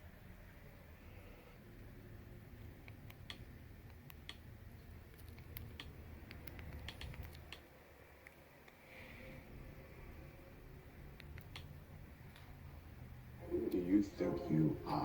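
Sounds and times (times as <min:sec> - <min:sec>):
low steady hum: 0:00.0 - 0:15.0
faint clicks and ticks: 0:02.6 - 0:08.8, 0:11.1 - 0:11.7.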